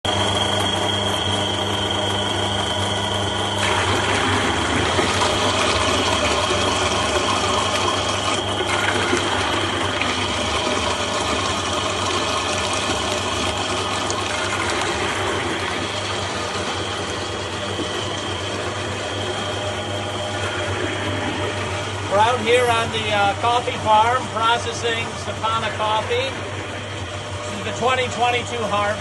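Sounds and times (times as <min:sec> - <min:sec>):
machine motor humming and whining: 0:00.1 - 0:29.0
material rushing through machine: 0:02.1 - 0:23.6.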